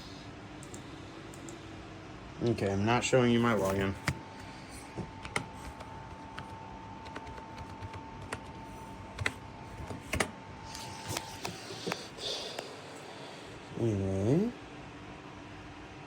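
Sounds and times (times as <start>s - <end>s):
typing on computer keyboard: 5.2s - 10.3s.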